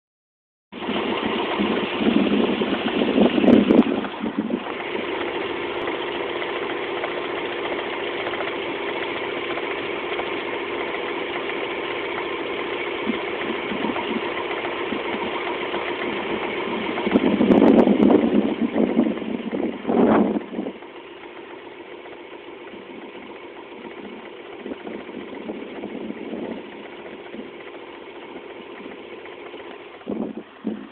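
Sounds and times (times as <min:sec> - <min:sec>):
car engine knocking: 0:00.8 - 0:30.9.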